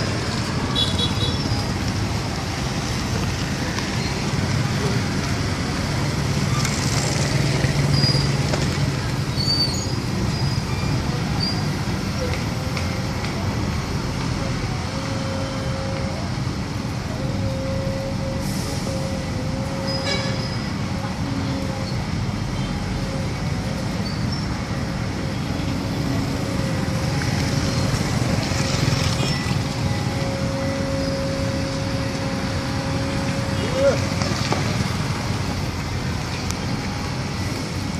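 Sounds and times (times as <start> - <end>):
low rumble of engines: 0.0 - 37.9.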